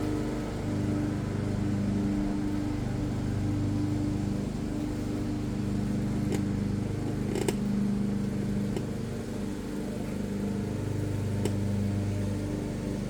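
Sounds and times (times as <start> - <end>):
low mechanical hum: 0.0 - 13.0
clicks and taps on bike shifter: 7.3 - 7.6.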